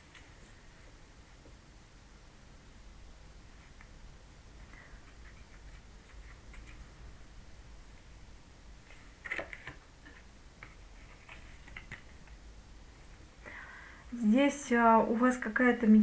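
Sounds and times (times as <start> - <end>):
cards clicking and tapping: 8.9 - 12.4.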